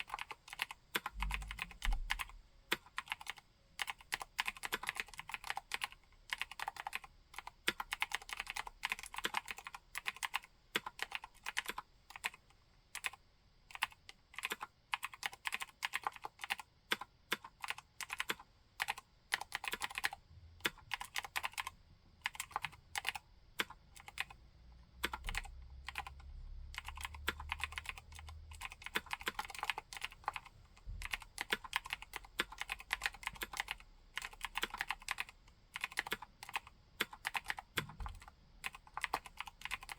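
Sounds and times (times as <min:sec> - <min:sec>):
mechanical keyboard typing: 0:00.0 - 0:24.4, 0:25.0 - 0:39.9
faint low rumble: 0:01.0 - 0:02.5.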